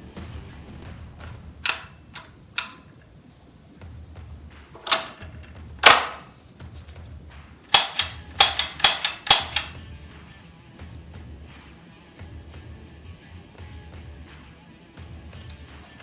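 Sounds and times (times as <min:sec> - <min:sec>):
background music with low beat: 0:00.0 - 0:16.0
air rifle cracks: 0:01.2 - 0:03.2, 0:04.6 - 0:07.0, 0:07.6 - 0:09.8.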